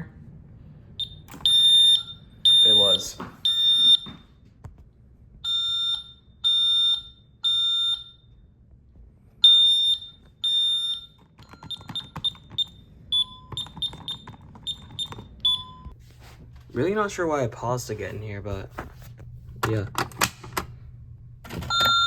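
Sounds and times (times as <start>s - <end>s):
fire alarm beeping: 1.0s - 4.5s, 5.4s - 8.6s, 9.4s - 16.0s, 21.5s - 22.0s.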